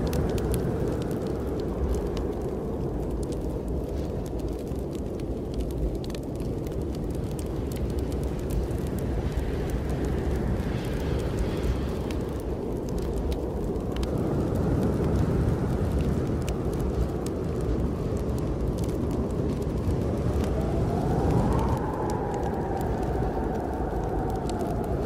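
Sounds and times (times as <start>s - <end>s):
fireplace crackles: 0.0s - 25.0s
snowstorm wind rumble: 0.0s - 25.0s
thin wind whistle: 20.4s - 25.0s.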